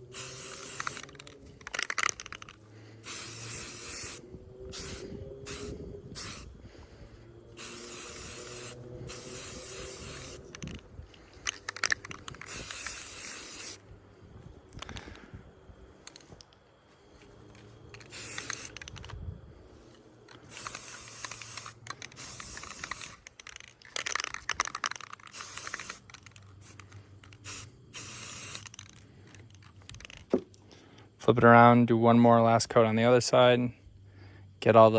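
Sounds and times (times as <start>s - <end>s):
spray paint can hissing: 0.0s - 6.7s, 7.5s - 13.8s, 17.9s - 19.1s, 20.3s - 30.4s.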